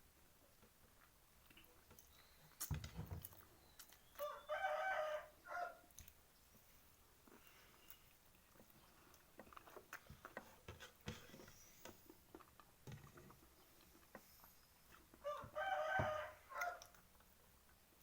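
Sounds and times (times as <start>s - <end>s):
faint clicks and taps of eating: 0.5s - 4.3s, 5.9s - 6.6s, 7.2s - 17.8s
rooster crowing: 4.2s - 5.8s, 15.2s - 16.9s.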